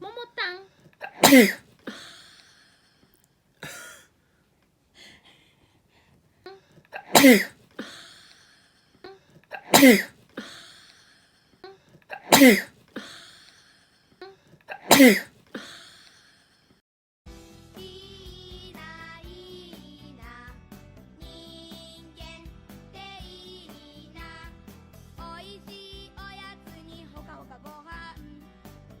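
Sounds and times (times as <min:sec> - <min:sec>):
person sneezing: 0:01.0 - 0:02.4, 0:03.6 - 0:04.0, 0:06.9 - 0:08.3, 0:09.5 - 0:10.9, 0:12.1 - 0:13.4, 0:14.7 - 0:16.0.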